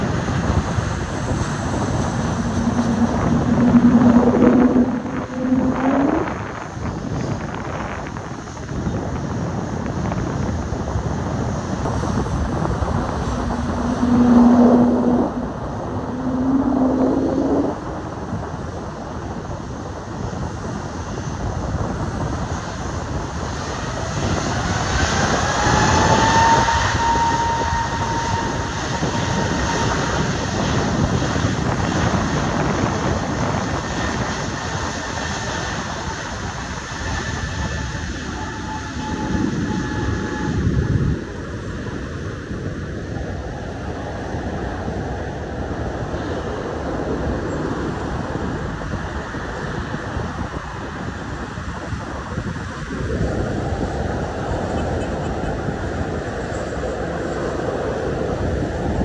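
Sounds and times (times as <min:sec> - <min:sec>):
engine whine rising in pitch: 0:00.0 - 0:07.6, 0:11.7 - 0:19.0, 0:22.5 - 0:41.9
jet engine rush: 0:00.0 - 0:59.0
low moaning rising tones: 0:00.6 - 0:07.2, 0:11.8 - 0:18.6.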